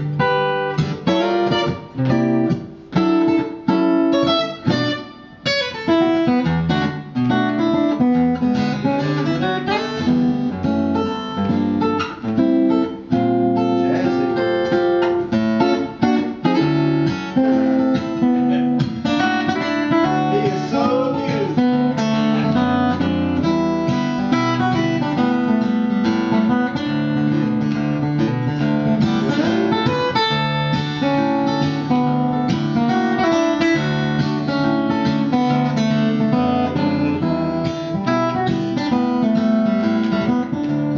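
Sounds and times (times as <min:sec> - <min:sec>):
fingerpicked acoustic guitar: 0:00.0 - 0:40.9.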